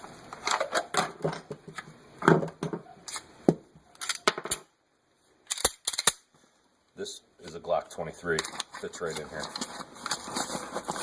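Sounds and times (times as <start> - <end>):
nylon bag rustling: 8.9 - 11.0.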